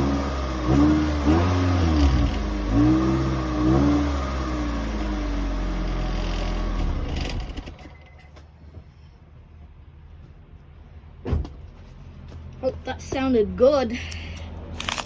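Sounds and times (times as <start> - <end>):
car engine running: 0.0 - 8.1.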